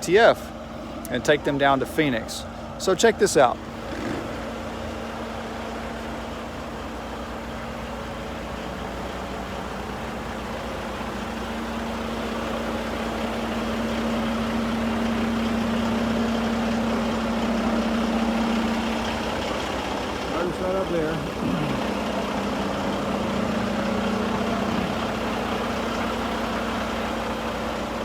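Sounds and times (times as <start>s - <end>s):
diesel truck engine idling: 0.0s - 28.0s.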